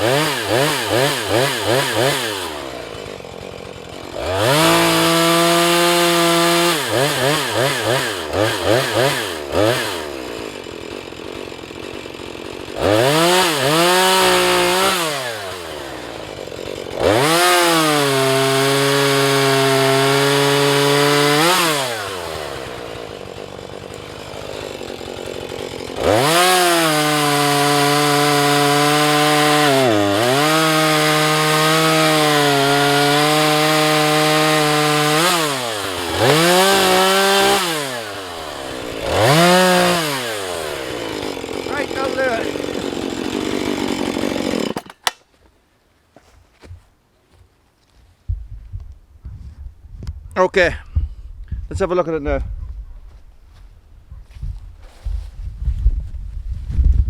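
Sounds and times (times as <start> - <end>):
chainsaw cutting wood: 0.0 - 45.5, 54.3 - 55.9.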